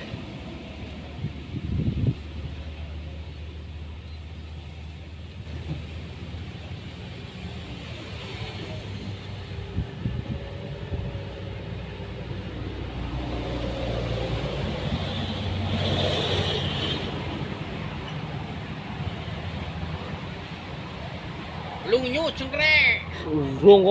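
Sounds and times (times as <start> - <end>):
vehicle engine passing by: 4.7 - 21.8.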